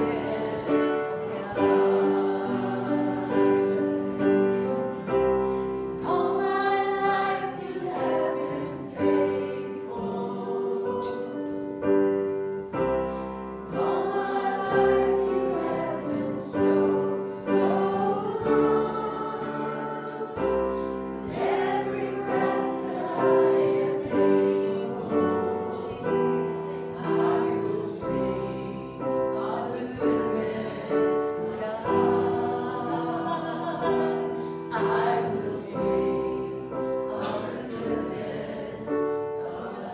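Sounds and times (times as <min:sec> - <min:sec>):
choir singing a hymn: 0:00.0 - 0:39.9
piano accompaniment: 0:00.0 - 0:39.9.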